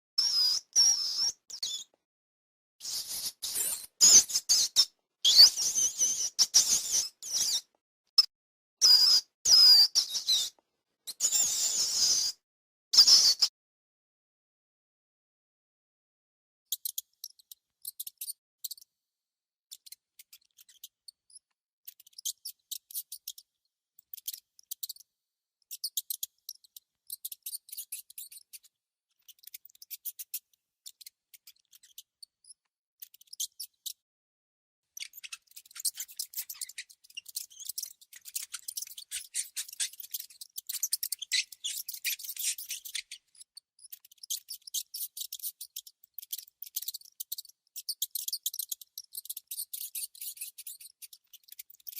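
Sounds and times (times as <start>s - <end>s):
mouse high-pitched clicking chatter: 16.7s - 18.8s, 19.7s - 25.0s, 25.7s - 34.0s, 35.0s - 51.9s.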